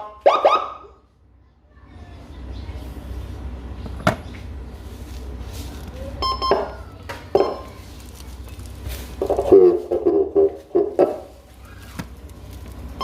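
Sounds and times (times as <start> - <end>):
siren speaker blips: 0.0 - 0.9
low steady rumble: 0.0 - 13.0.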